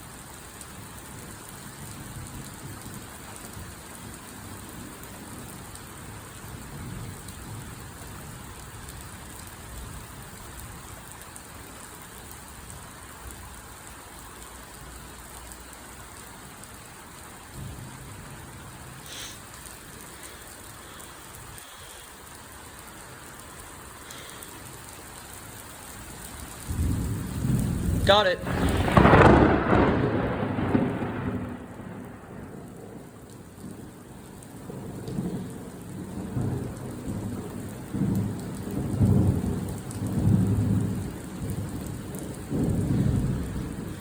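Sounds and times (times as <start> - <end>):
heavy rain falling: 0.0 - 44.0
thunder rumbling: 26.3 - 44.0.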